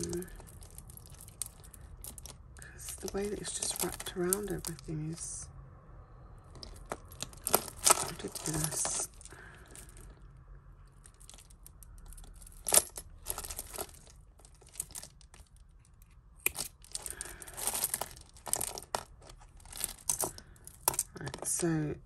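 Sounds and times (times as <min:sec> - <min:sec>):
beads and chains clicking: 0:00.0 - 0:04.9, 0:06.5 - 0:10.2, 0:10.9 - 0:15.8, 0:16.4 - 0:21.6
rustling: 0:06.5 - 0:21.6.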